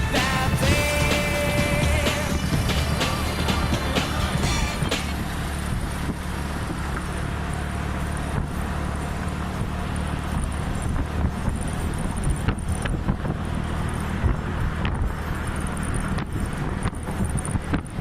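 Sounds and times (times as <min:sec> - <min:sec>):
scooter engine running: 0:00.0 - 0:17.7.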